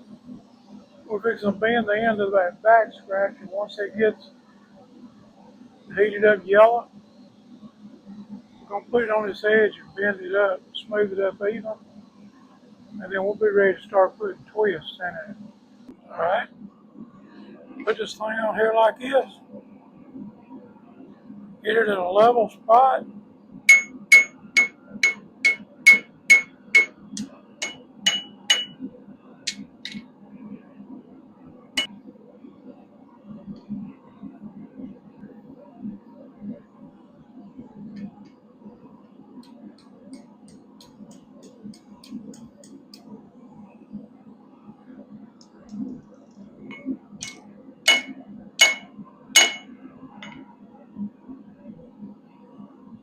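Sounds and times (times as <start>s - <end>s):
hammer striking hot steel on anvil: 23.7s - 28.8s, 46.7s - 50.4s.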